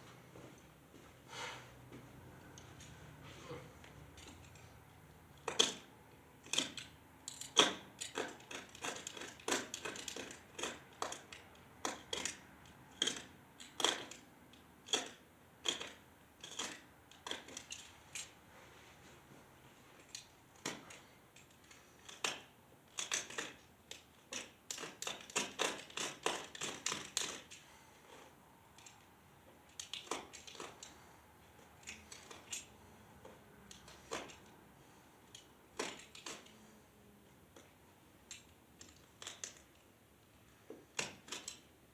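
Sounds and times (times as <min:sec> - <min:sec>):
metallic clicks of hand tools: 0:05.4 - 0:18.3, 0:20.0 - 0:27.6, 0:28.8 - 0:31.0, 0:31.8 - 0:32.7, 0:33.7 - 0:34.5, 0:35.3 - 0:36.6, 0:37.5 - 0:39.8, 0:40.9 - 0:41.7.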